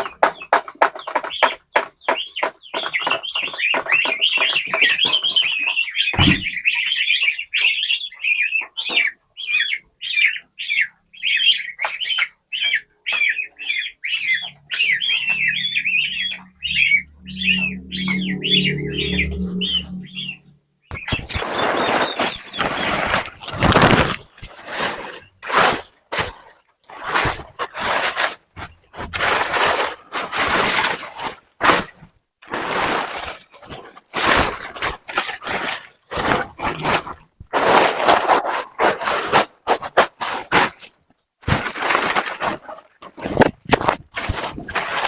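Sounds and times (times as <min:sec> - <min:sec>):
chicks peeping: 0:00.0 - 0:26.4
low hum: 0:15.8 - 0:20.9.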